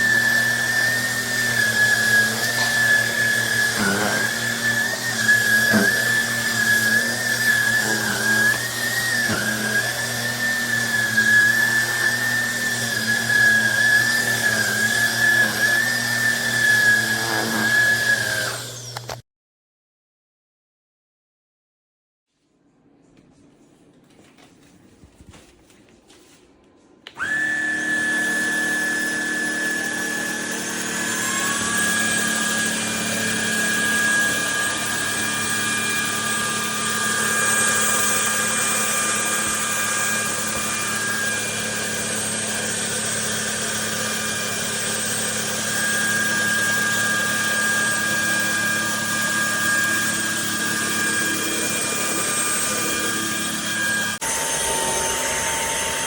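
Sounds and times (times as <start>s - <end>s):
vacuum motor whining: 0.0s - 19.2s, 27.0s - 56.0s.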